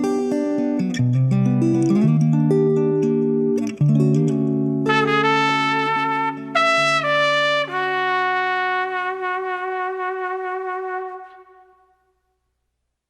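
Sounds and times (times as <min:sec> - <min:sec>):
sustained instrumental melody: 0:04.9 - 0:11.8.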